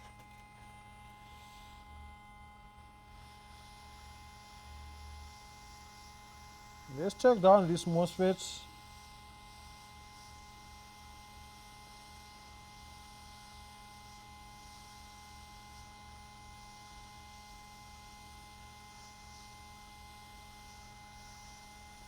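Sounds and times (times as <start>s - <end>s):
electrical hum: 0.0s - 9.3s.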